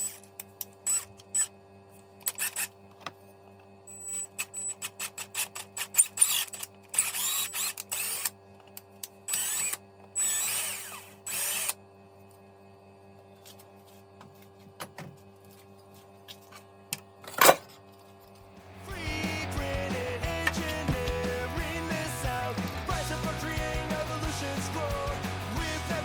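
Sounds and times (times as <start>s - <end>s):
power drill bursts: 4.0s - 8.3s, 9.3s - 11.8s.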